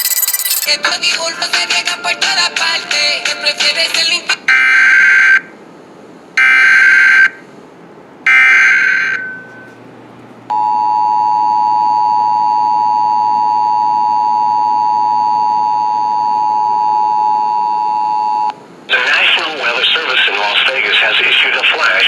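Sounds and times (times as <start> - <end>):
screeching digital data bursts: 0.0 - 0.7
two-tone attention signal: 0.0 - 0.7.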